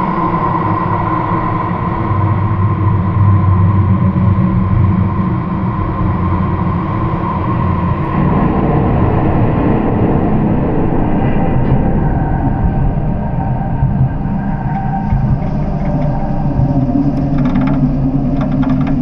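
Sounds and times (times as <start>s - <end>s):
heavy rumble of bridge: 2.1s - 19.0s
metallic ringing hum: 7.6s - 19.0s.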